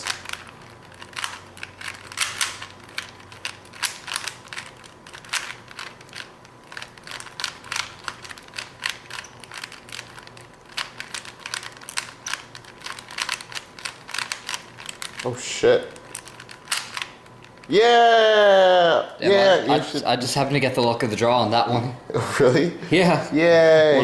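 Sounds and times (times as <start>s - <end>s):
puzzle cube plastic clicking: 0.0s - 15.2s.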